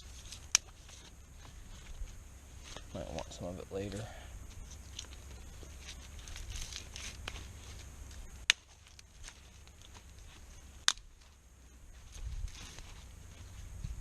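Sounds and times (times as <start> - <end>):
sticks snapping: 0.0 - 1.1, 8.1 - 10.1, 10.8 - 11.2
sticks crackling and rustling: 0.0 - 14.0.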